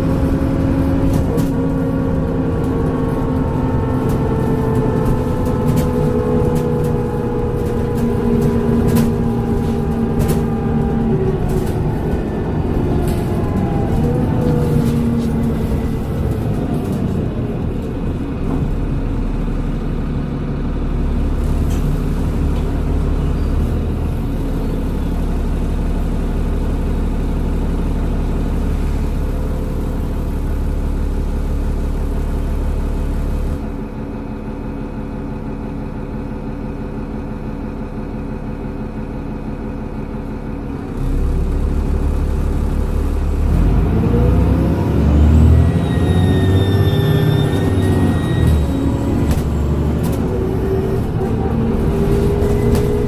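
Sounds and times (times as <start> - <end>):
bus diesel engine running: 0.0 - 53.0.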